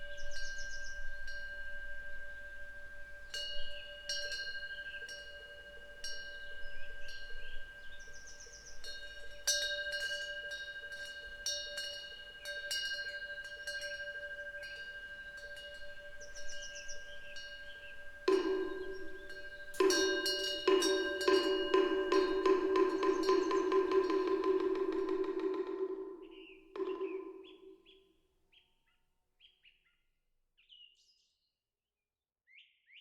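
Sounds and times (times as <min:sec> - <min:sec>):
bird chirping: 0:00.0 - 0:01.4, 0:06.4 - 0:09.5, 0:15.6 - 0:28.7
wind bell ringing: 0:00.0 - 0:27.8.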